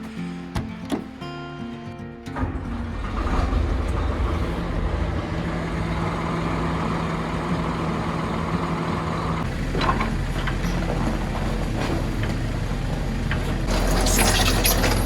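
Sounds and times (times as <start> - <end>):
short clanks: 2.2 - 6.8
excavator engine running: 2.2 - 15.0.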